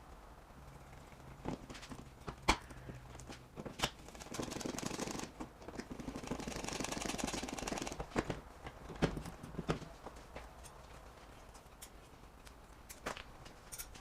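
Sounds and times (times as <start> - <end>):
rapid rattling clicks: 3.9 - 8.3.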